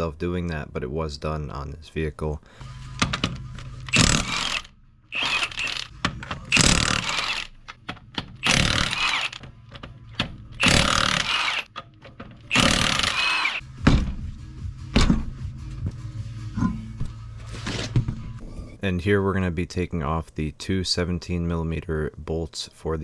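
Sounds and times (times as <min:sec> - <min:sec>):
power tool bursts: 0:03.9 - 0:05.9, 0:06.5 - 0:07.6, 0:08.4 - 0:09.4, 0:10.6 - 0:11.7, 0:12.5 - 0:13.6.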